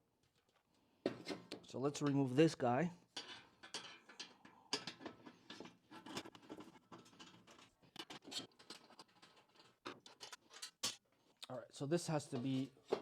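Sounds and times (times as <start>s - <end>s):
metal parts scraping and clicking: 3.2s - 11.0s.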